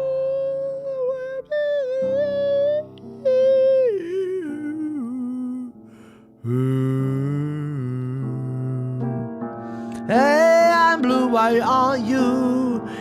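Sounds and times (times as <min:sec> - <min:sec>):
woman singing blues wordlessly: 0:00.0 - 0:05.7, 0:10.1 - 0:13.0.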